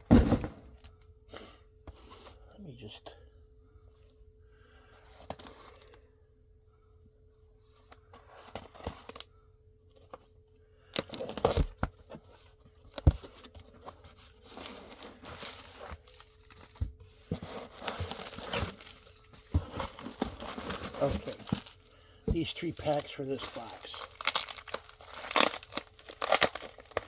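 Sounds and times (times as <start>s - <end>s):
packaging tearing and rustling: 13.7s - 27.0s.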